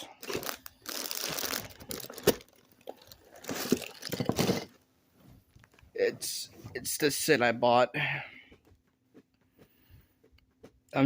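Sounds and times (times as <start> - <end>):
packaging crinkling and scraping: 0.0 - 4.8.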